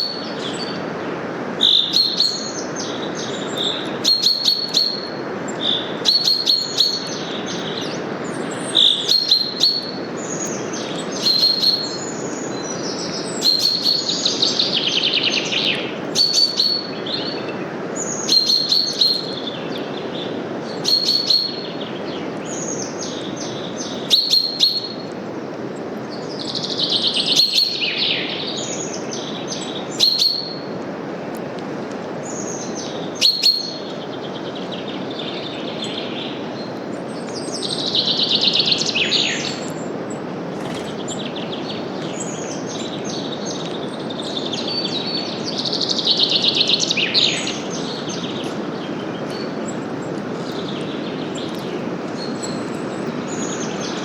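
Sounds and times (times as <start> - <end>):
birds chirping: 0.0 - 25.2, 26.1 - 30.8, 32.2 - 54.0
wind through leaves: 0.0 - 54.0
bird trills: 1.6 - 8.0, 8.7 - 12.6, 13.4 - 14.2, 15.0 - 17.5, 18.1 - 19.6, 20.8 - 21.8, 23.8 - 25.0, 27.2 - 28.3, 29.2 - 30.7, 32.8 - 34.0.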